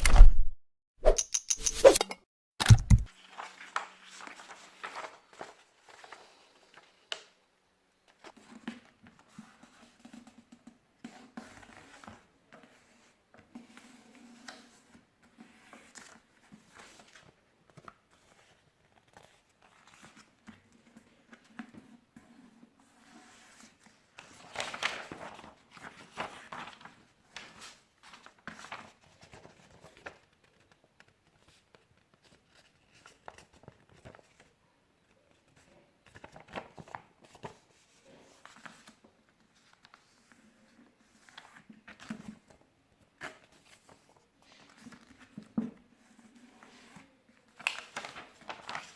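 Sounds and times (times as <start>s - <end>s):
paper rustling and crinkling: 3.1s - 6.9s, 23.4s - 34.6s, 35.5s - 40.4s, 43.2s - 48.9s.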